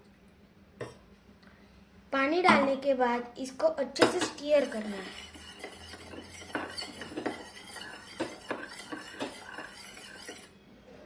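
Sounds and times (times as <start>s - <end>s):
utensil clinking and scraping: 4.2s - 10.5s
toothpaste being stirred in container: 4.4s - 10.5s.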